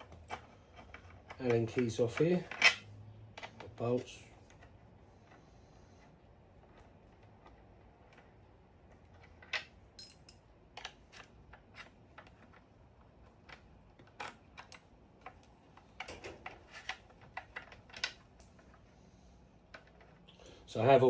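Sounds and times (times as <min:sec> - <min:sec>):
allen key clicking on bolts: 0:10.0 - 0:10.4.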